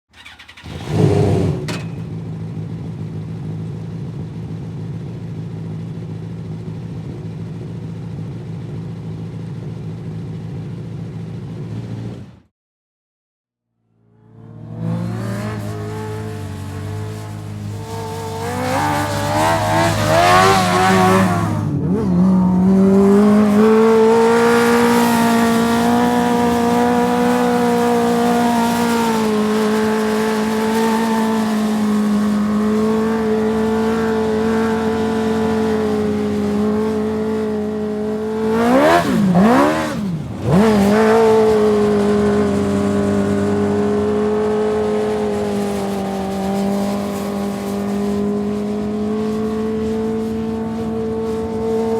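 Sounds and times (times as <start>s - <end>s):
race car engine at high revs: 0.2s - 2.0s, 14.2s - 51.9s.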